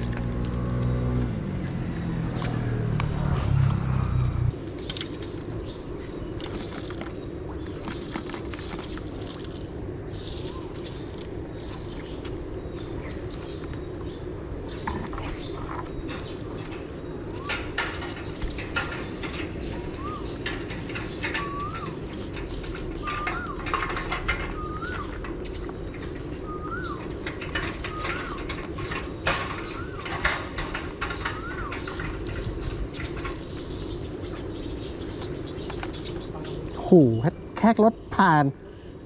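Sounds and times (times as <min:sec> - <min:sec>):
bird whistled call: 0:19.9 - 0:20.4, 0:21.3 - 0:22.1, 0:24.5 - 0:25.1, 0:26.4 - 0:27.1, 0:29.6 - 0:30.3, 0:31.2 - 0:32.0.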